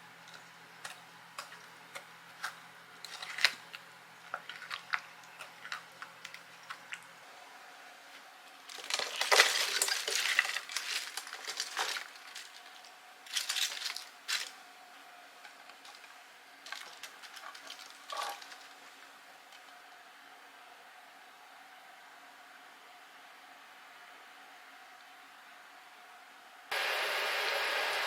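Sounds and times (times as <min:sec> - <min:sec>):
faint steady hum: 0:00.0 - 0:28.0
kitchen clattering and crackling: 0:02.4 - 0:07.0, 0:08.6 - 0:14.6, 0:15.4 - 0:19.0.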